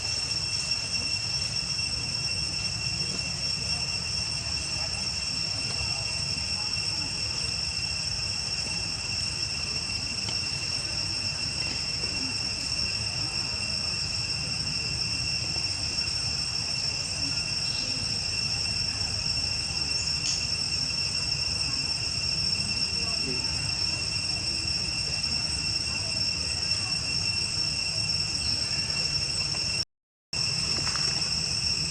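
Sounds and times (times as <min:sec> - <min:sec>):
insects droning: 0:00.0 - 0:29.8, 0:30.4 - 0:31.9.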